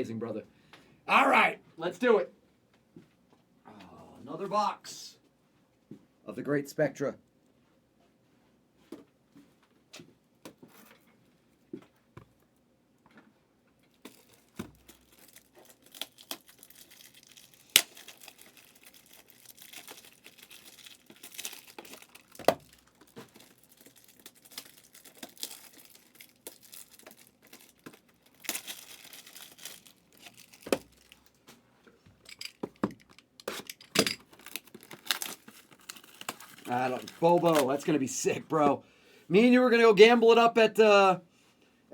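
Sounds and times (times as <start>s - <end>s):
shrink wrap tearing and crinkling: 13.9s - 31.4s, 32.3s - 38.6s.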